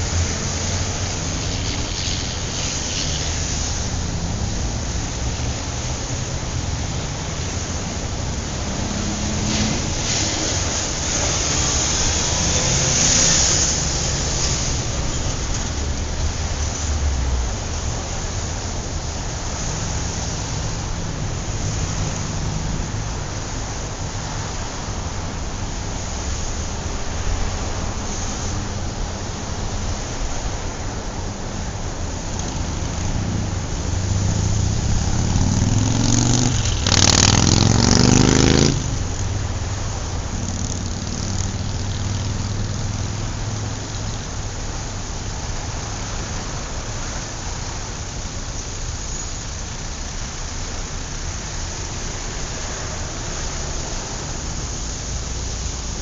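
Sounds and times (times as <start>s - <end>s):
vehicle accelerating past: 0.0s - 18.3s, 32.2s - 44.2s
street traffic rumble: 0.0s - 56.0s.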